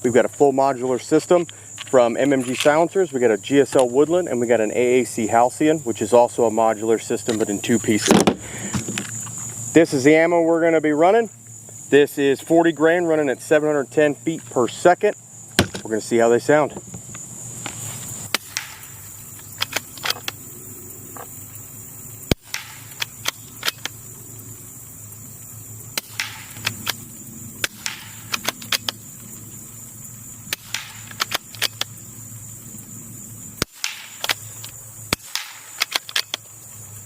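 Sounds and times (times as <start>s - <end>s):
suppressed rifle shots: 18.3s - 20.4s, 22.3s - 23.9s, 26.0s - 27.0s, 27.6s - 29.0s, 30.5s - 31.9s, 33.6s - 36.4s
rifle bolt clicks: 30.5s - 31.9s, 33.6s - 36.4s.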